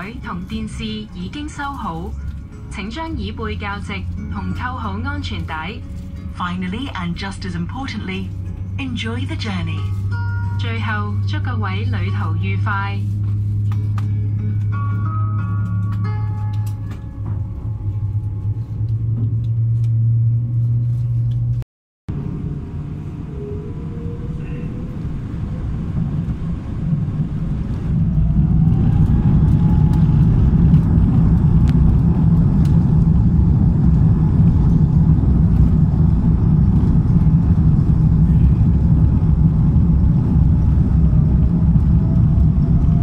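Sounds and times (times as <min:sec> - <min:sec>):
airliner rumbling on runway: 0:00.0 - 0:43.0
jet engines whining: 0:22.1 - 0:43.0.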